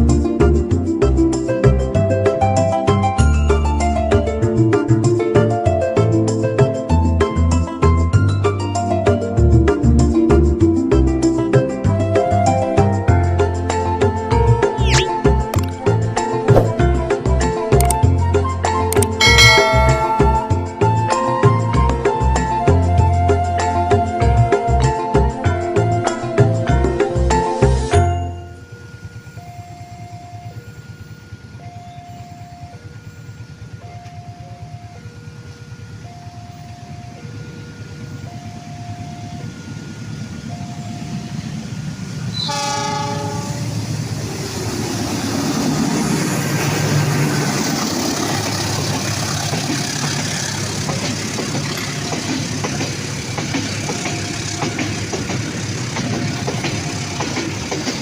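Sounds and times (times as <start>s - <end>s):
train passing with wheel clatter: 0.0s - 58.0s
level crossing alarm chiming: 19.0s - 21.2s, 28.1s - 41.9s
train horn blast: 42.3s - 44.1s.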